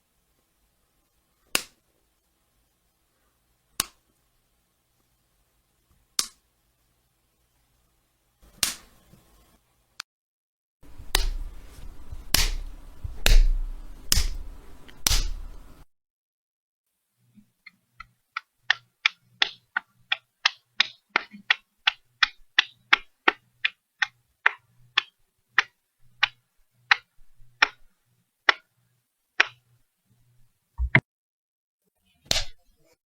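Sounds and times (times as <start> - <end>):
sharp slaps: 1.5 - 1.8, 3.8 - 4.0, 8.6 - 8.9, 11.1 - 11.5, 12.3 - 14.4, 15.0 - 15.4, 32.3 - 32.6.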